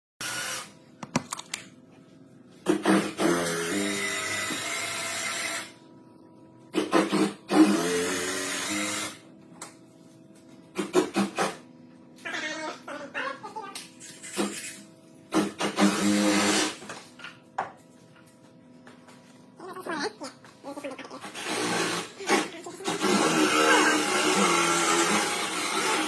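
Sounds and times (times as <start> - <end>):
handheld power tool running: 0.2 - 0.8, 2.7 - 5.8, 6.8 - 9.2, 15.3 - 16.8, 21.2 - 26.0.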